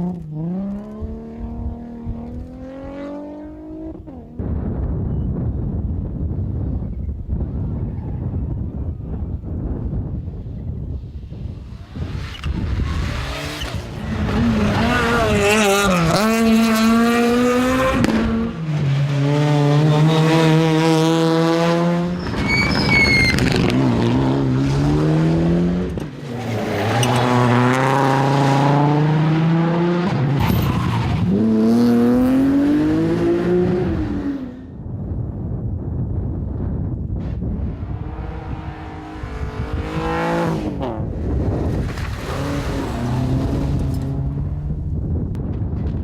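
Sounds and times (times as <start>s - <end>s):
rally car engines revving: 0.0s - 4.4s, 11.2s - 34.8s, 37.2s - 45.3s.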